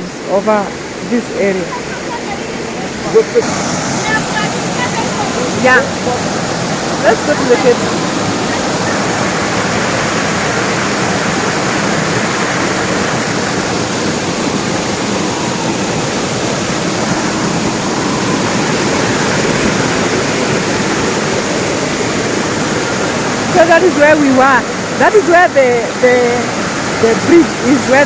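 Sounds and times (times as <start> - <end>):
waterfall pouring: 2.5 - 25.2.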